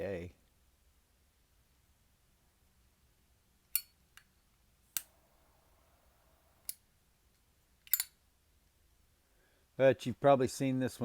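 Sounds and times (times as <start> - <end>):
lighter metallic clicks: 7.9 - 8.1.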